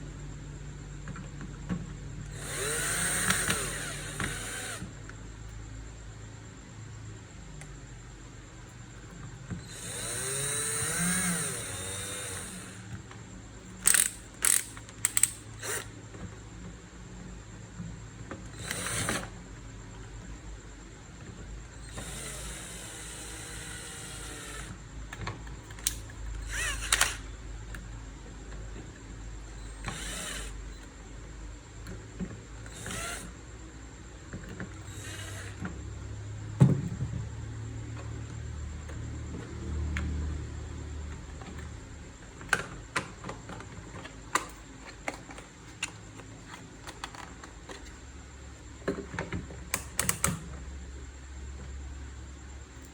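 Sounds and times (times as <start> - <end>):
sharp clicks: 13.8 - 15.9.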